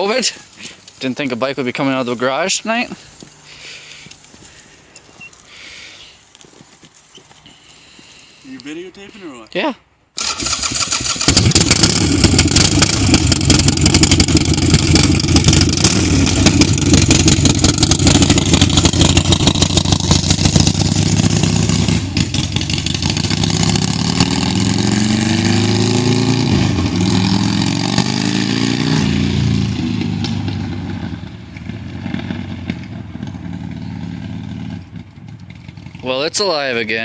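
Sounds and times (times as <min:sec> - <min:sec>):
motorcycle engine revving loudly: 0:10.2 - 0:36.1.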